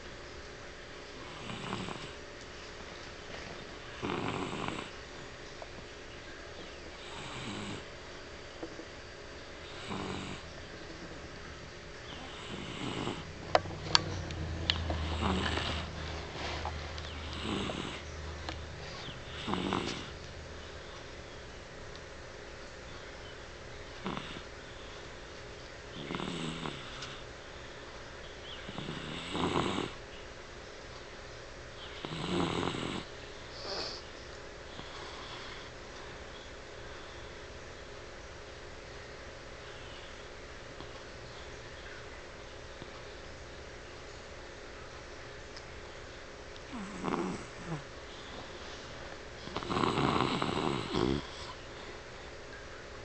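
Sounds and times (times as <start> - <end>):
dog snoring: 1.2 - 2.2, 3.9 - 5.0, 7.0 - 7.9, 9.6 - 10.5, 12.1 - 16.3, 17.1 - 18.3, 18.9 - 20.2, 24.0 - 24.5, 25.9 - 27.3, 28.6 - 30.0, 31.9 - 34.0, 34.7 - 35.7, 46.7 - 48.6, 49.4 - 51.6.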